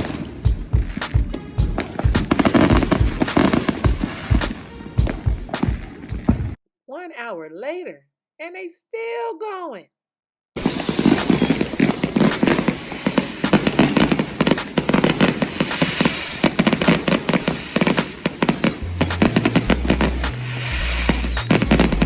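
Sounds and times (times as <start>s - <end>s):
fireworks bangs and crackling pops: 0.0s - 6.6s, 10.6s - 22.0s
low bass music: 18.8s - 22.0s.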